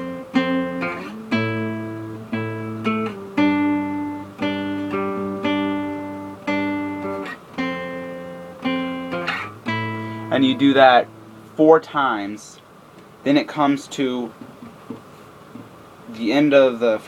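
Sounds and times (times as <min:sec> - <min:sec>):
guitar chords ringing: 0:00.0 - 0:12.6.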